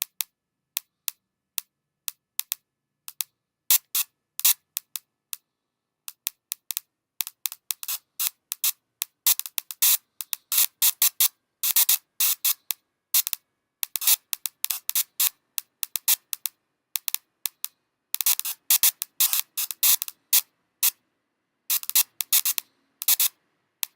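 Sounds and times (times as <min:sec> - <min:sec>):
bursts of hissing noise: 0:09.8 - 0:12.6, 0:18.3 - 0:21.0, 0:21.7 - 0:23.4.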